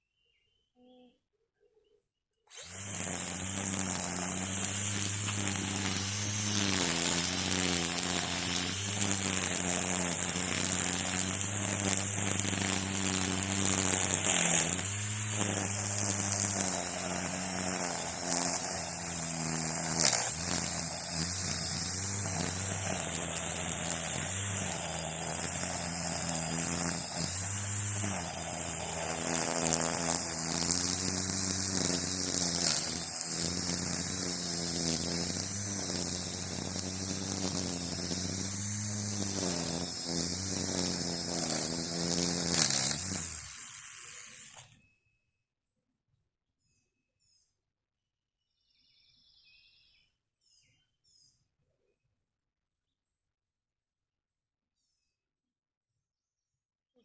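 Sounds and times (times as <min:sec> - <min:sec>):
string trimmer running: 0:02.5 - 0:44.8.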